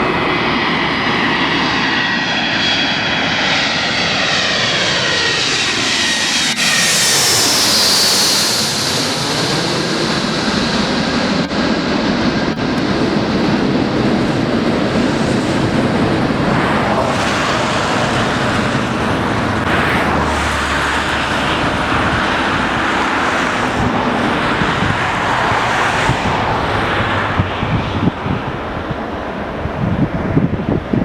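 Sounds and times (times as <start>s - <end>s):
jet airliner engines roaring: 0.0s - 31.0s.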